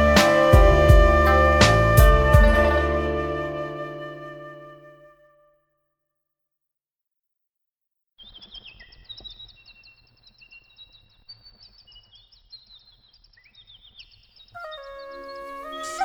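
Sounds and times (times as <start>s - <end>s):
birds chirping and trilling: 8.2s - 16.0s.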